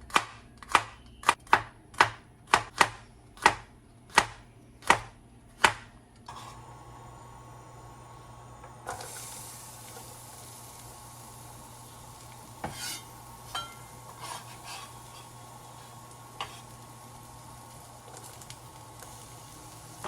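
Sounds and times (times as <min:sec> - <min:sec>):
utensil scraping pan: 0:06.3 - 0:06.6, 0:12.6 - 0:16.8
food sizzling in a pan: 0:06.3 - 0:20.0.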